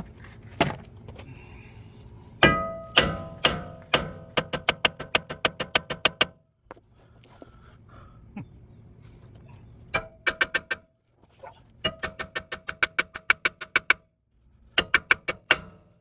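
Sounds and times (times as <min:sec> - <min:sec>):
hammer striking metal rotor: 0:02.4 - 0:06.2.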